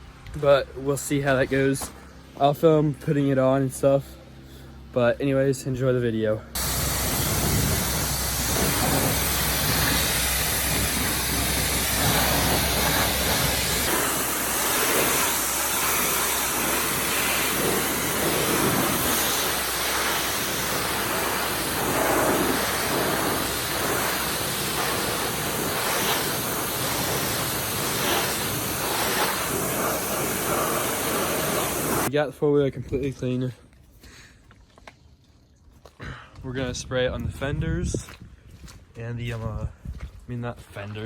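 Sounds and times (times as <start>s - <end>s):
low hum: 6.4s - 32.1s
pressure washer spraying: 6.6s - 32.1s.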